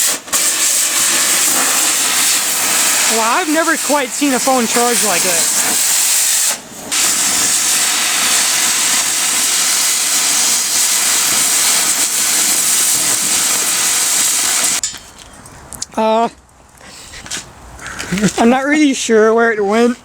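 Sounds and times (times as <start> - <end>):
battery venting with jet-like hiss: 0.0 - 14.8.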